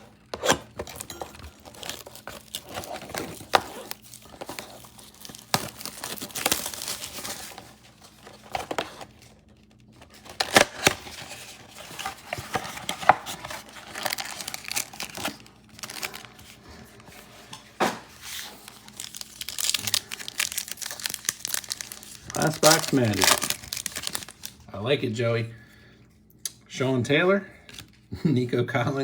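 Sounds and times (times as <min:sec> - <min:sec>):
plastic wrapping tearing and crinkling: 0:00.0 - 0:16.6, 0:18.1 - 0:24.7.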